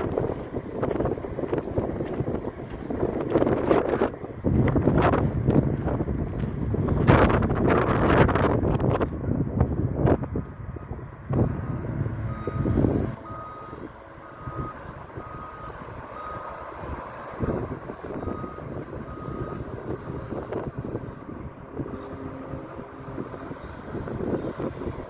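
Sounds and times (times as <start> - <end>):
wind buffeting microphone: 0.0 - 25.0
vehicle reversing alarm beeping: 10.8 - 25.0.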